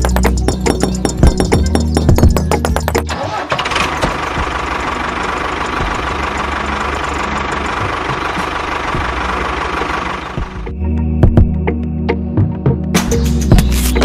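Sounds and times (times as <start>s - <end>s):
small motor rattling: 0.0s - 10.5s.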